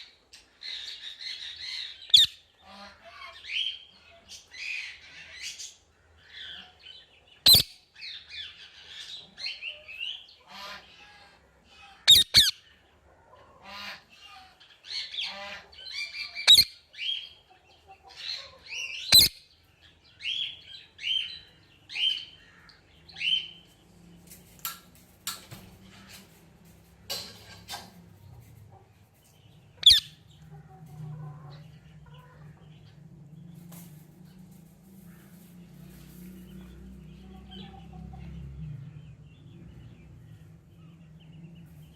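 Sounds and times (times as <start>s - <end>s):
parrot chirping: 1.8s - 2.4s, 7.5s - 7.8s, 12.1s - 12.6s, 16.0s - 17.2s, 18.9s - 19.5s, 29.8s - 30.2s
parrot squawking: 12.1s - 12.6s, 29.8s - 30.2s.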